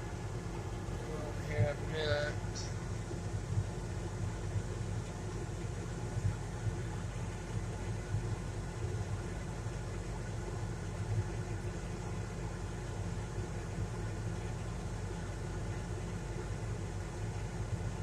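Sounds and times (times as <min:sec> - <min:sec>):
tractor diesel engine droning: 0:00.0 - 0:03.0.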